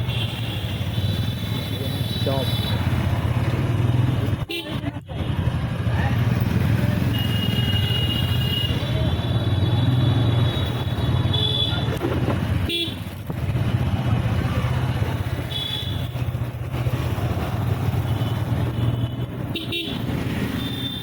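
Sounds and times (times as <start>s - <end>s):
city traffic: 0.0s - 21.0s
motorcycle engine running: 5.2s - 20.7s
vehicle horns honking: 7.0s - 12.0s, 12.6s - 13.0s, 18.0s - 21.0s.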